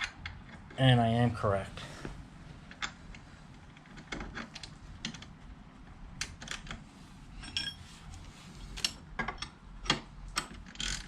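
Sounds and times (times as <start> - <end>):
short metallic ring: 7.4 - 7.8.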